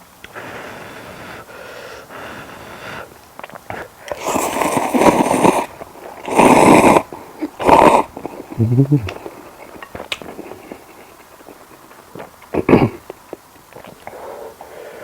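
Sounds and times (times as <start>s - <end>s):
mouth noises while eating: 0.2s - 15.0s
loud airy slurps: 2.2s - 9.3s.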